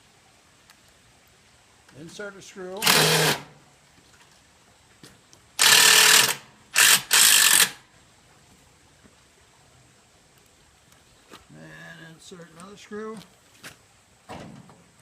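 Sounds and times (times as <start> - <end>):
power drill driving screw into metal: 2.8 - 3.5, 5.6 - 7.8.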